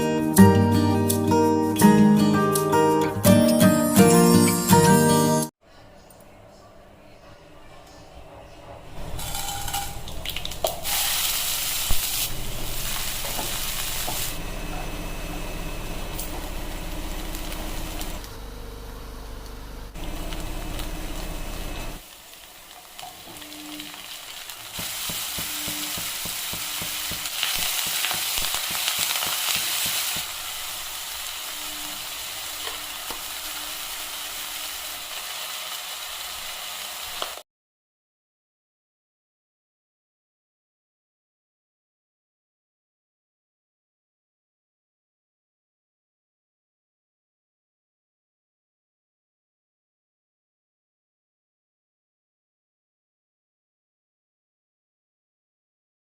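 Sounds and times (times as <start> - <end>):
food sizzling in a pan: 9.0 - 14.4, 16.0 - 18.2, 20.0 - 37.4.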